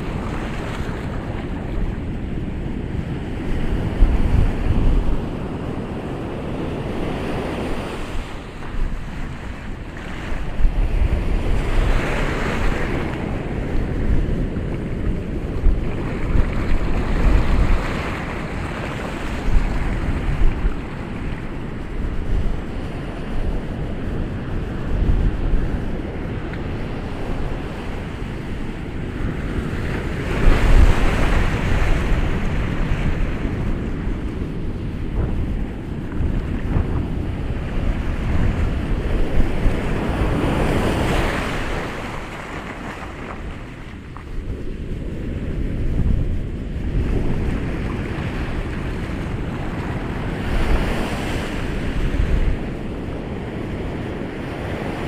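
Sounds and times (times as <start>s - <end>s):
ocean waves breaking on shore: 0.0s - 55.0s
wind buffeting microphone: 0.0s - 55.0s.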